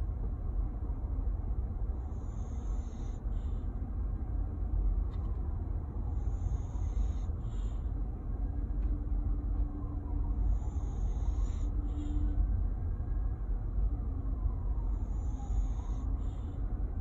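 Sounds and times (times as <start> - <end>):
steady low rumble: 0.0 - 17.0
snoring breaths: 1.9 - 3.8, 6.0 - 8.1, 10.2 - 12.4, 14.8 - 16.8.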